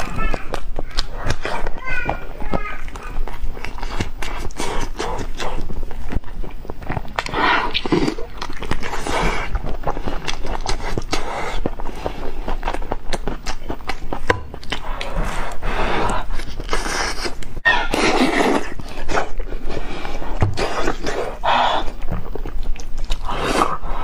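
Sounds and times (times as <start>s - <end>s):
mouth noise: 0.0s - 11.6s, 13.5s - 19.4s
person chewing and biting: 0.0s - 24.0s.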